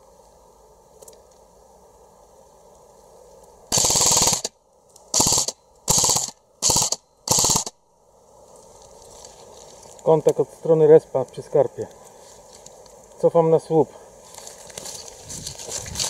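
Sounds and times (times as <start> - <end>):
airsoft gun firing bursts: 3.7 - 4.5, 5.1 - 7.8.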